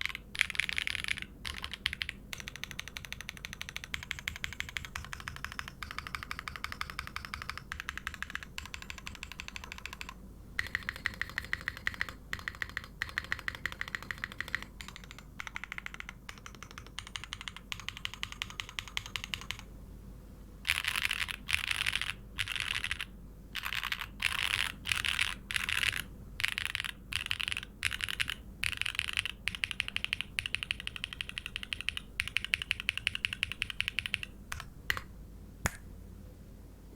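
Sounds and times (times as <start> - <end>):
mechanical keyboard typing: 0.0 - 19.7, 20.7 - 35.1.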